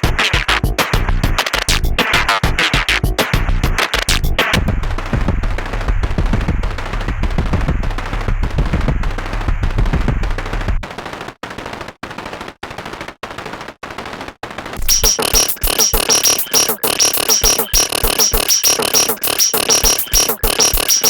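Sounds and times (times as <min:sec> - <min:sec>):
harsh noisy drum pattern: 0:00.0 - 0:10.9, 0:14.8 - 0:21.0
heavy deep bass: 0:04.6 - 0:10.8.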